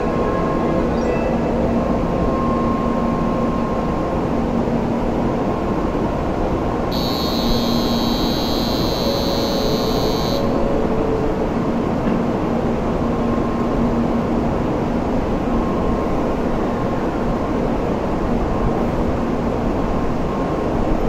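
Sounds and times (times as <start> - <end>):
train equipment whirring: 6.9 - 10.5
high buzzer-like electronic tone: 6.9 - 10.6.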